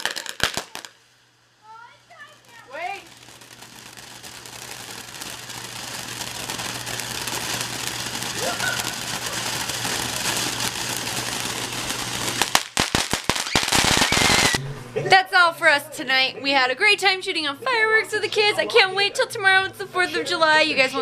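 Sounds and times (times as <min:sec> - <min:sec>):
firework crackling and hissing: 0:00.0 - 0:14.6
sharp firework cracks: 0:00.0 - 0:14.6.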